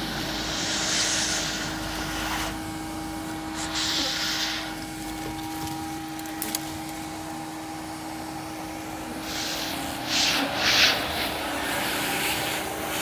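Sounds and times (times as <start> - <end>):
vacuum motor hum and suction: 0.0 - 13.0.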